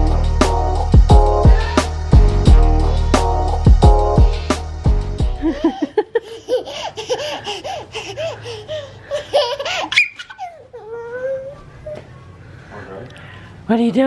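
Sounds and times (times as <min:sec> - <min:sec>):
drawn-out vocal sound: 0:00.0 - 0:05.7
child laughing: 0:05.4 - 0:12.1
child squealing: 0:09.8 - 0:12.1.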